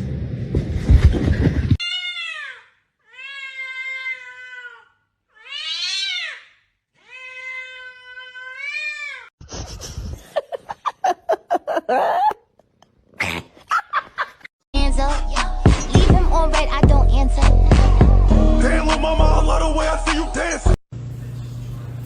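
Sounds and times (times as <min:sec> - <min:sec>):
cat meowing: 0:03.1 - 0:04.8, 0:05.4 - 0:06.4, 0:07.0 - 0:09.3.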